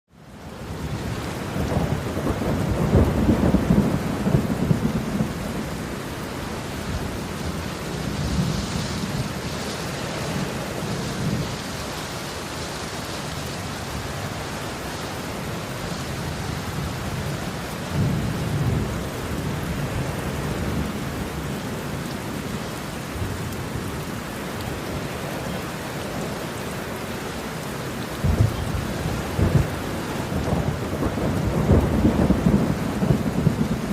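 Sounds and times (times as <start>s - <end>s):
heavy rain pouring: 0.1s - 33.9s
thunder rumbling: 0.8s - 11.8s, 15.4s - 24.1s, 28.1s - 33.9s.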